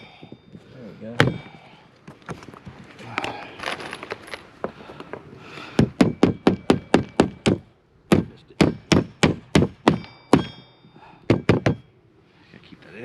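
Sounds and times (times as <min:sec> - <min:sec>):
light knocks and rustling: 0:00.6 - 0:05.2
hammer blows on nails: 0:04.6 - 0:11.9.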